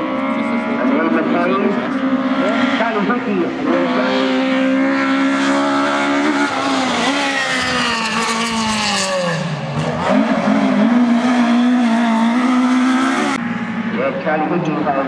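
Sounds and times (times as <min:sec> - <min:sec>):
rally car engine at high revs: 0:00.0 - 0:15.0.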